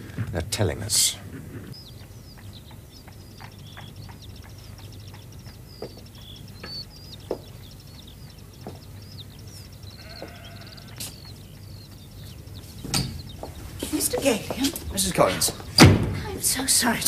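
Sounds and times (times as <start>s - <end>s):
small birds chirping: 0.0s - 17.0s
sheep bleating: 10.0s - 11.0s
sharp knocks: 15.8s - 16.2s.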